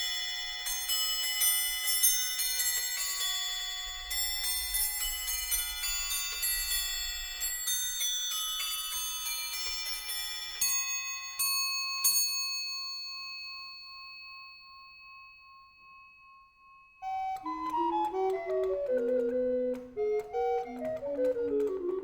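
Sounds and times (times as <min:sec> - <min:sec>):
bell-like chimes ringing: 0:00.0 - 0:17.2.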